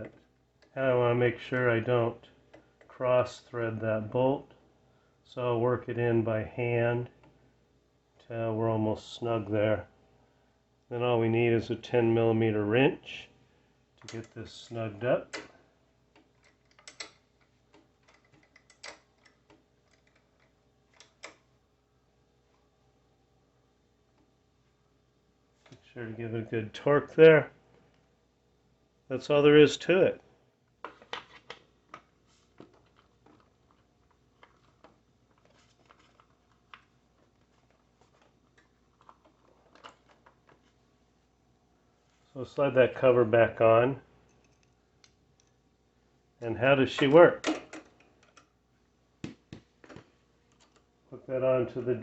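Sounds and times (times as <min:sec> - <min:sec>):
faint clicks of small parts: 0:14.0 - 0:21.5, 0:30.7 - 0:40.8, 0:44.2 - 0:45.7, 0:47.4 - 0:48.6, 0:49.8 - 0:50.9.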